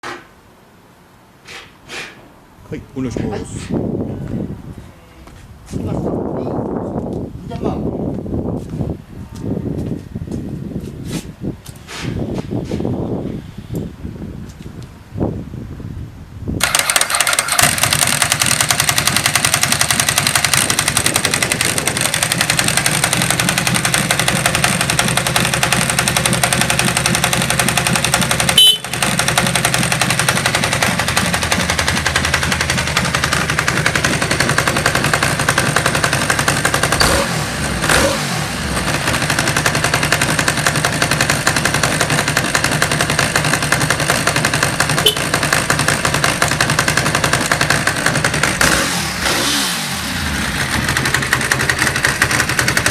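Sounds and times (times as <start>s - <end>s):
motorcycle engine idling: 16.6s - 49.3s, 49.9s - 52.9s
starter motor: 16.6s - 52.9s.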